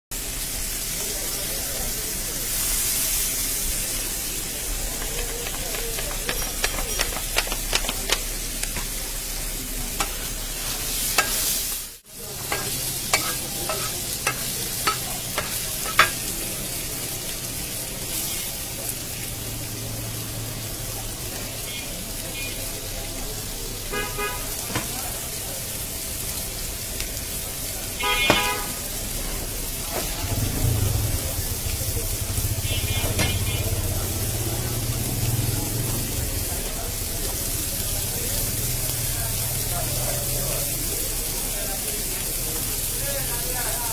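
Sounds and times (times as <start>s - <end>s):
food sizzling in a pan: 0.1s - 43.9s
metal utensil tapping a pan: 4.9s - 9.2s, 10.0s - 10.4s, 11.1s - 11.7s, 12.5s - 16.4s.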